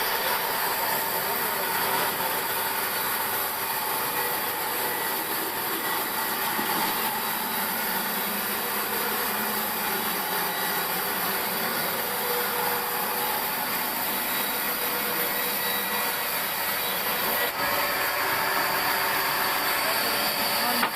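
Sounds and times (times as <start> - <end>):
sawmill saw cutting wood: 0.0 - 20.9.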